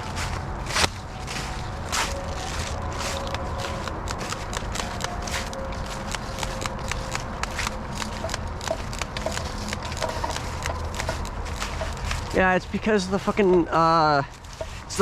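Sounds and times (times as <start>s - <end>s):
footsteps crunching on dry ground: 0.0s - 15.0s.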